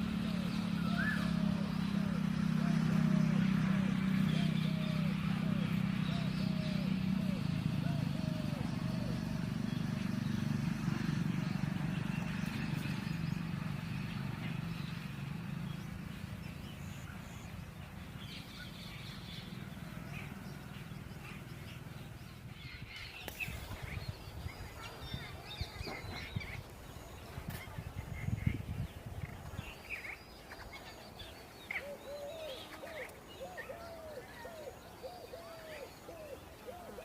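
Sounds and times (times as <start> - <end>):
birds chirping: 0.0 - 37.0.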